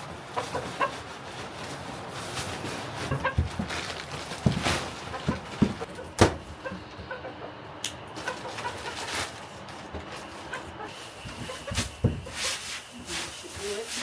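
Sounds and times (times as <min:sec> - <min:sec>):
chickens clucking softly: 0:00.2 - 0:01.2, 0:05.0 - 0:09.3.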